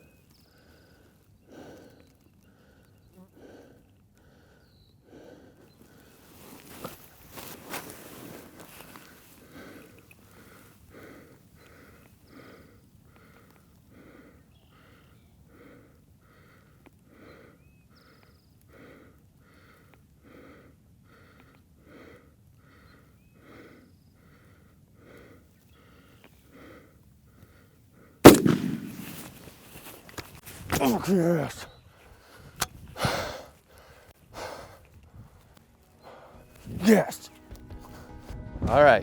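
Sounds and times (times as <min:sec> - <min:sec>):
person breathing rapidly: 0:00.5 - 0:30.0, 0:31.8 - 0:37.1
loud shotgun blast: 0:28.2 - 0:29.4.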